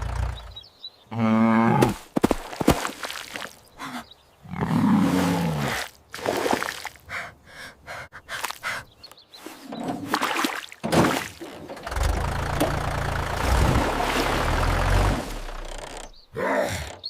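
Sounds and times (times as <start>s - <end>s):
engine rumbling: 0.0s - 0.8s, 10.8s - 17.0s.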